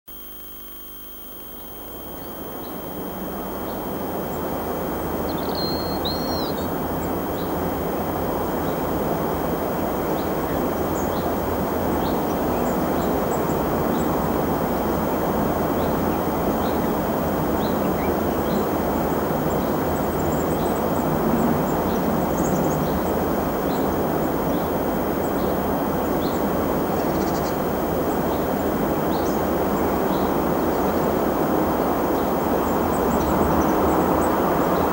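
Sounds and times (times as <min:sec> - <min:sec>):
small birds chirping: 0:01.6 - 0:07.6, 0:24.5 - 0:31.1.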